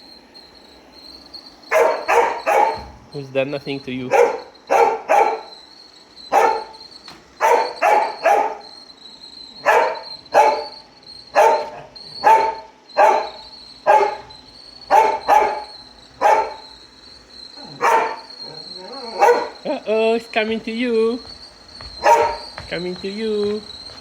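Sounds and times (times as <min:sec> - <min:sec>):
robot vacuum whine: 0:00.0 - 0:24.0
dog barking: 0:01.7 - 0:03.0, 0:03.9 - 0:08.8, 0:09.6 - 0:16.9, 0:17.5 - 0:19.9, 0:21.8 - 0:23.7.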